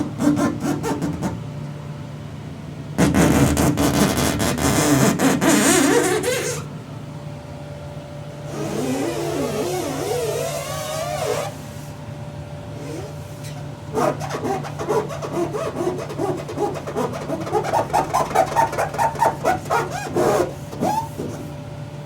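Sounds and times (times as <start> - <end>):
squeaky rubbing strokes: 3.0 - 6.7, 8.5 - 12.0, 12.8 - 21.6.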